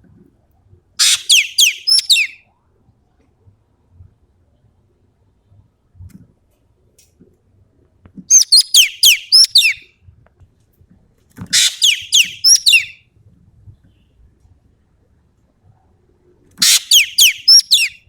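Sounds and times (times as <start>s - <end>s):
bird calling high sharp notes: 1.0s - 2.4s, 11.6s - 12.9s, 16.6s - 18.0s.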